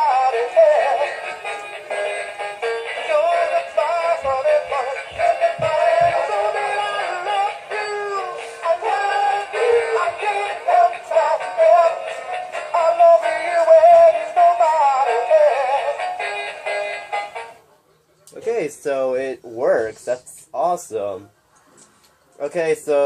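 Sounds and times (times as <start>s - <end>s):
toy singing through tinny speaker: 2.8s - 16.1s.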